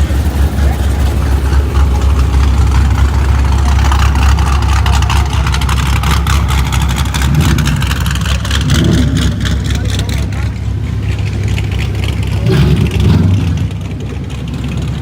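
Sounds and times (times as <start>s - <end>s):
car engine rumbling: 0.0s - 15.0s
sharp engine crackles: 0.0s - 15.0s.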